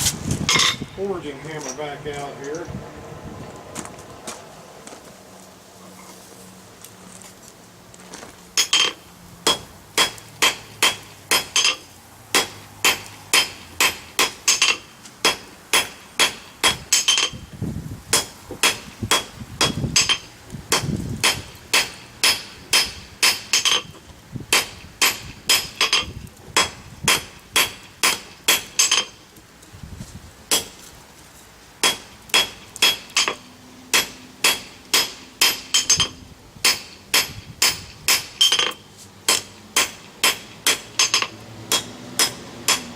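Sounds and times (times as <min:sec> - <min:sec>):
hammer striking hot steel: 0:08.6 - 0:17.4, 0:18.1 - 0:29.3, 0:30.5 - 0:30.9, 0:31.8 - 0:42.9.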